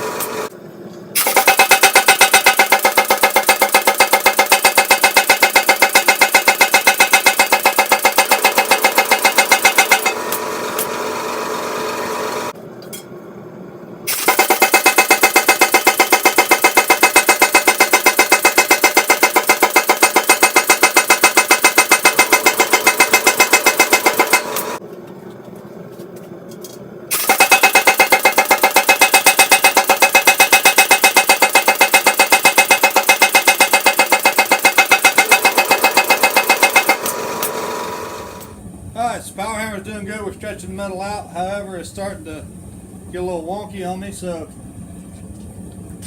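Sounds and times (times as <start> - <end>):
power hammer striking metal: 1.2 - 11.0, 14.1 - 24.8, 27.1 - 38.5.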